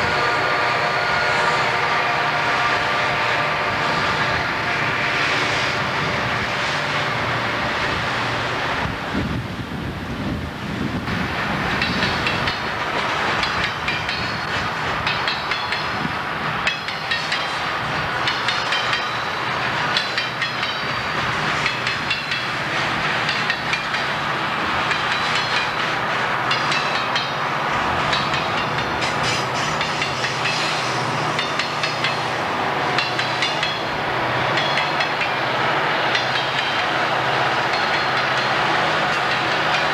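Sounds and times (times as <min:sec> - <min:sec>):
freight train rumbling past: 0:00.0 - 0:39.9
wheels clicking over rail joints: 0:11.0 - 0:39.9.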